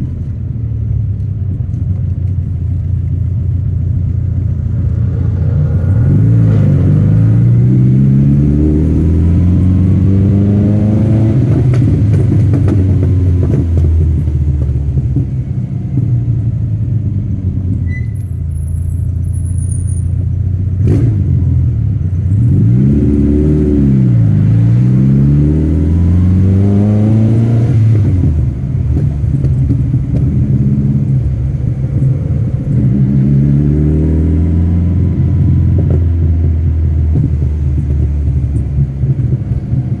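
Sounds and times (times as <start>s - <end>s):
car engine revving: 1.0s - 17.8s, 20.4s - 40.0s.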